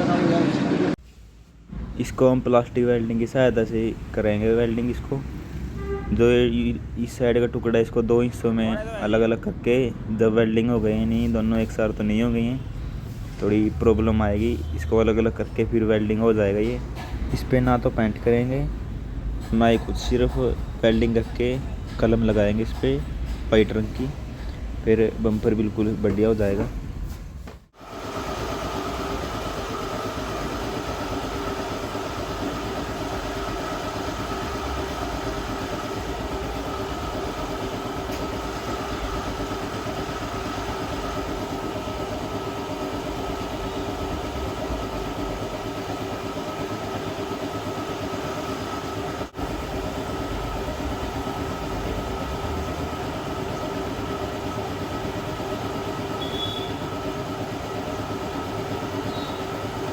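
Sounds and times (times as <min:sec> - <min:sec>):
blower motor whirring: 0:27.8 - 0:59.9.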